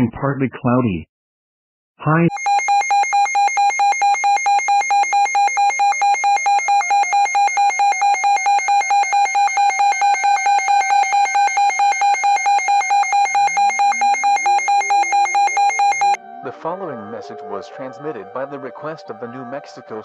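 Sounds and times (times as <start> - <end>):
rapid electronic alert beeps: 2.3 - 16.2.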